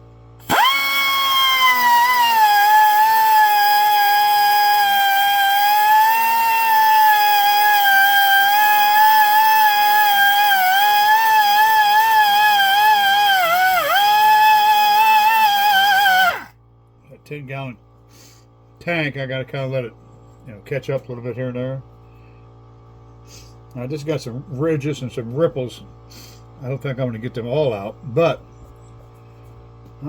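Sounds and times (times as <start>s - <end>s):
air rotary tool whining on stone: 0.4s - 16.5s.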